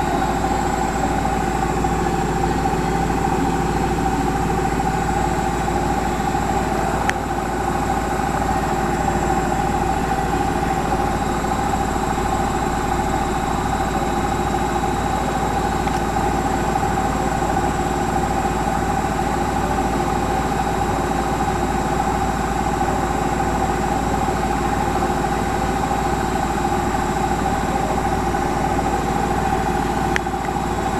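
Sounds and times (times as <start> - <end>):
drum pulsing rumble: 0.0 - 21.5
washing machine motor whine: 0.0 - 30.9.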